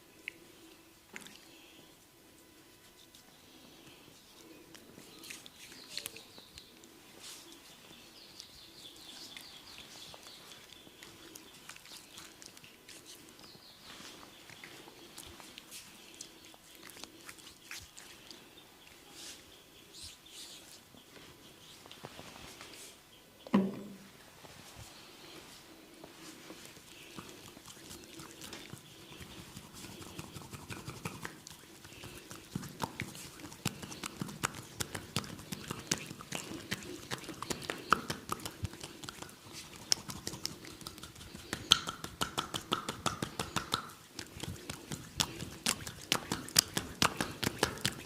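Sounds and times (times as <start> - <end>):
hands massaging oiled skin: 8.4 - 18.5, 24.6 - 48.0.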